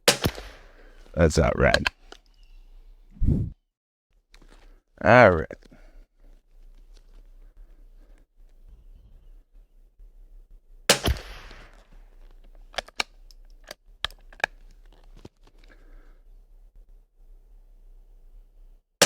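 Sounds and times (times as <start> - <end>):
rifle shot with echo: 0.0 - 0.9, 10.9 - 11.9.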